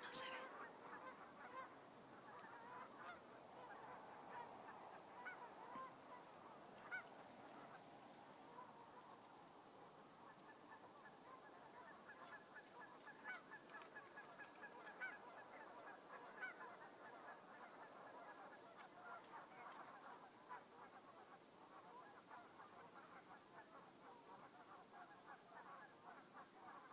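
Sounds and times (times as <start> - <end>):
distant honking animal calls: 0.0 - 1.7.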